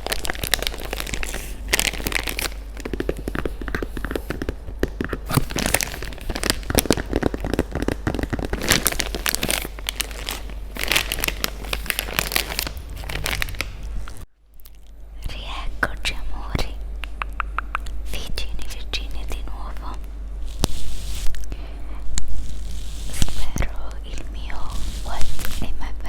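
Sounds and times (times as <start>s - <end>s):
plastic packaging crinkling: 0.0s - 14.2s, 20.4s - 21.5s, 22.2s - 25.8s.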